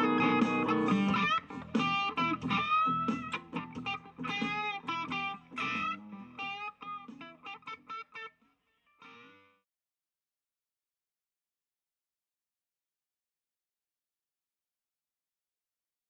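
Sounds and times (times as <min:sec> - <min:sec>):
electric guitar blues lead: 0:00.0 - 0:09.6.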